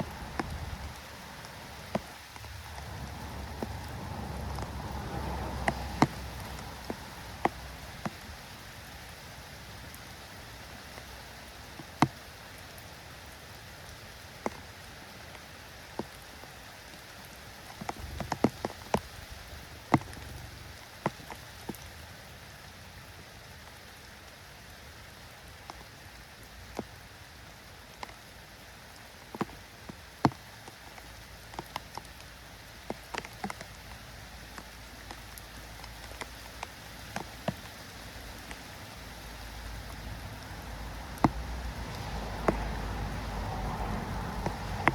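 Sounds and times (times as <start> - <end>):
light rain patter: 0.0 - 44.9
sharp taps: 41.1 - 42.7.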